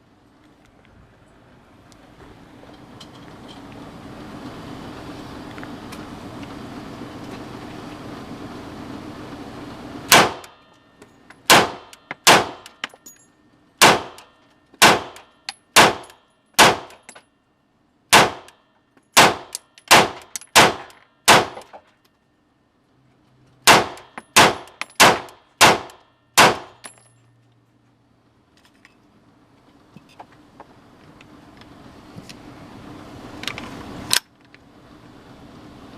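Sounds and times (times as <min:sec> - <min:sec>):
pistol shots: 0:10.1 - 0:10.5, 0:11.5 - 0:12.8, 0:13.8 - 0:17.0, 0:18.1 - 0:18.5, 0:19.2 - 0:21.7, 0:23.7 - 0:26.8.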